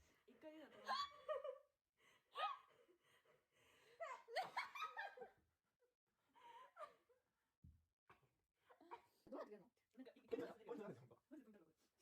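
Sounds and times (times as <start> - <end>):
people breathing hard: 2.0 - 4.1
people laughing: 4.0 - 5.4.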